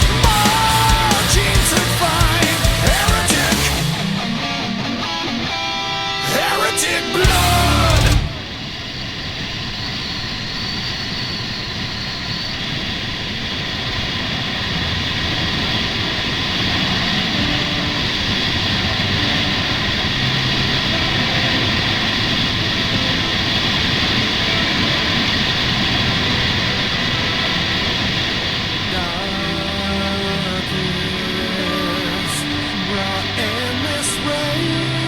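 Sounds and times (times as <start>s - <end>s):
motorcycle engine: 0.0s - 4.6s.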